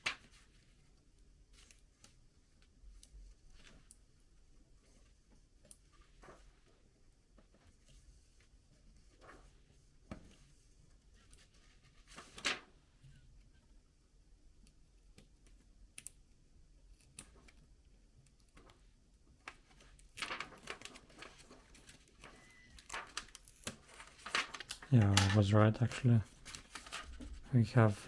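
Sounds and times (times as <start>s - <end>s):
scratchy rustling and scraping: 19.5s - 28.0s.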